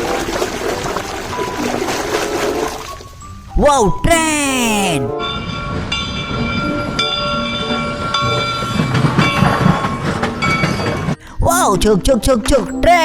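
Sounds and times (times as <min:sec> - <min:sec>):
running train rumble: 0:05.7 - 0:11.8.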